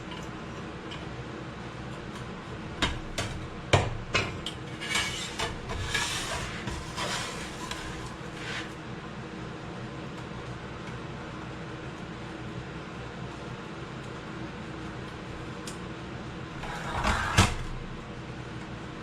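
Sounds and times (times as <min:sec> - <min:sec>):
metal scraping and rubbing: 0:04.6 - 0:08.8, 0:16.6 - 0:17.7.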